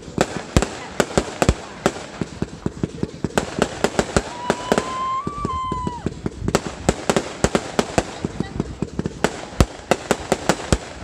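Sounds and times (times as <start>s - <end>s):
fireworks bangs: 0.0s - 11.0s
firework whistle: 4.0s - 6.5s.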